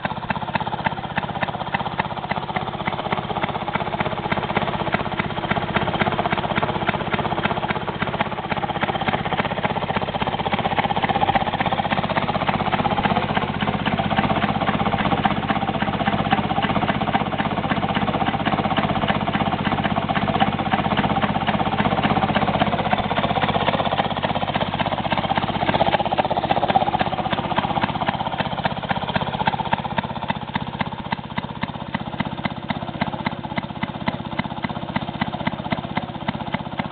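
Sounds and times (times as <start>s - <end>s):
two-stroke engine popping: 0.0s - 36.9s.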